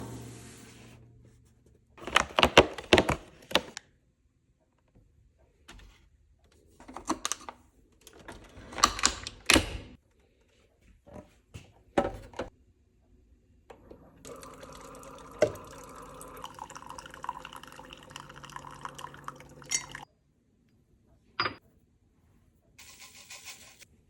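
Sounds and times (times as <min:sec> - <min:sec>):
liquid pouring into a cup: 0:14.1 - 0:20.0.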